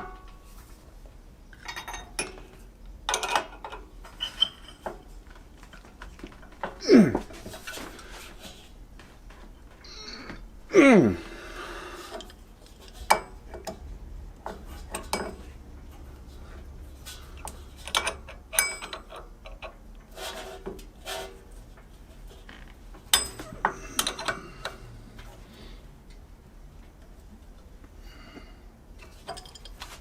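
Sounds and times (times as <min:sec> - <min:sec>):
small metal parts clinking: 0:01.5 - 0:02.4, 0:29.0 - 0:30.0.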